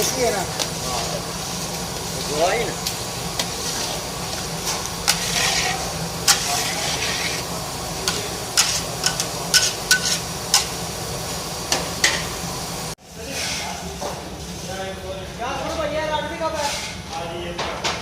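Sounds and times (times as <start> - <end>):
food sizzling in a pan: 0.0 - 13.8
spoon scraping a pan: 4.6 - 7.4, 8.1 - 10.8.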